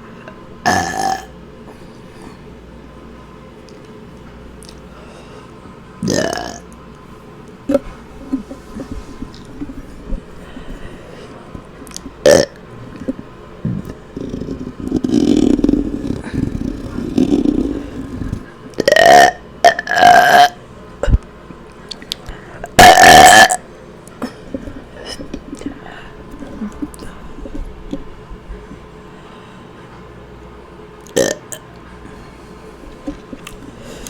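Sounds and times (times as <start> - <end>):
woman burping: 0.6 - 1.3, 6.0 - 6.6, 12.2 - 13.1, 13.7 - 20.6, 22.8 - 23.6.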